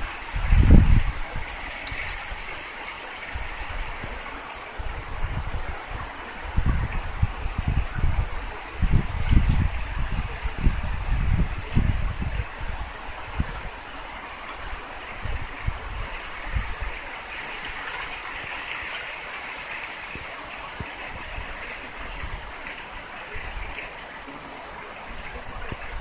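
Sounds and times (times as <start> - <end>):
wind and rain rushing: 0.0 - 26.0.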